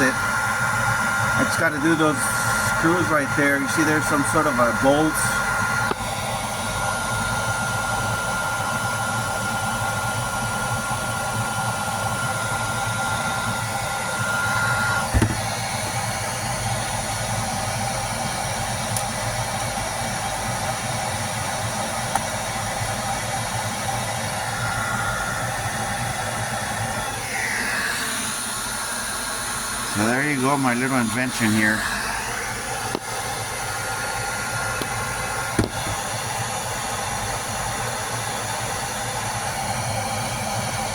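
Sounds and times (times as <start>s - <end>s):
hair dryer running: 0.0s - 40.9s
short bump: 15.1s - 15.5s.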